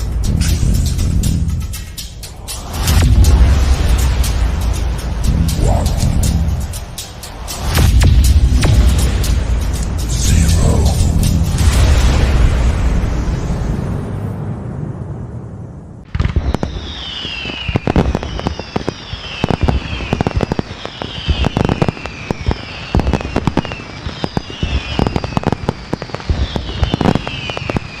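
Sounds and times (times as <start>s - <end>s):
fireworks bangs and crackles: 0.0s - 28.0s
falling firework whistle: 16.1s - 28.0s.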